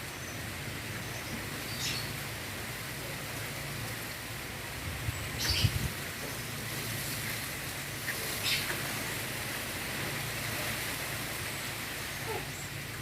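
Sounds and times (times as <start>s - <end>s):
strong wind blowing: 4.8s - 6.0s.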